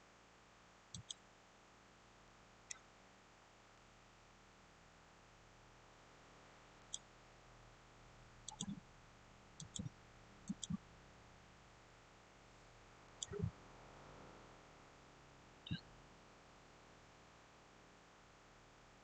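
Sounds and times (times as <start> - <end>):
faint steady hiss: 0.0 - 19.0
computer mouse clicking: 1.0 - 1.2, 8.5 - 8.8, 9.6 - 10.8, 13.2 - 13.5.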